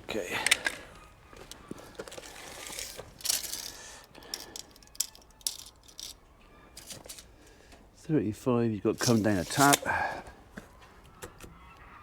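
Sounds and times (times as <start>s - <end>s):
scraping rustles: 1.6s - 6.1s, 8.9s - 9.9s
metal parts and tools clinking: 2.0s - 6.2s, 6.8s - 7.3s, 8.9s - 9.9s.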